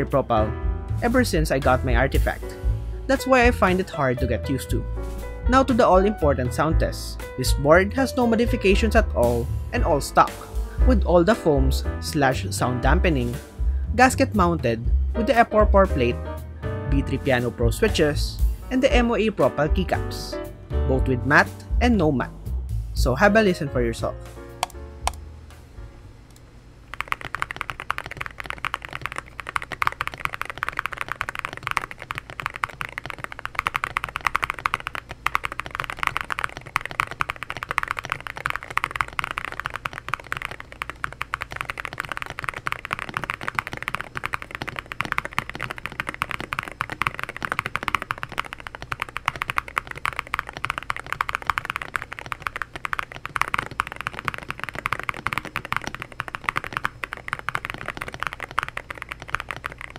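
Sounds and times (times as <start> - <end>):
fast mechanical keyboard typing: 0.0 - 0.4, 3.2 - 4.8, 26.9 - 59.9.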